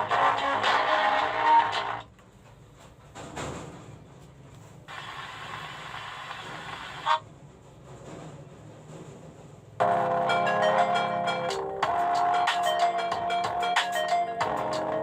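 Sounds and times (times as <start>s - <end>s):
music through a loudspeaker: 0.0s - 2.1s, 9.8s - 15.0s
low hiss and noise: 0.0s - 9.9s.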